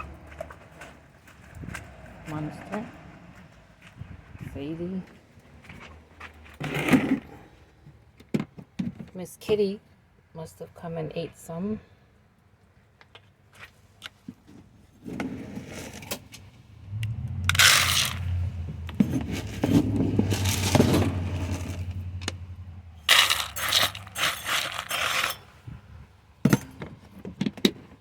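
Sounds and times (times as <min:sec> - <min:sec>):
feed scraping and rattling in container: 0:15.0 - 0:25.8
low steady hum: 0:16.5 - 0:27.0.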